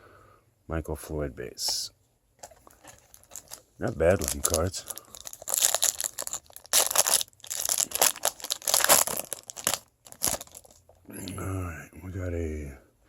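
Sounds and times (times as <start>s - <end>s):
foil wrapper tearing and crinkling: 2.7s - 10.8s.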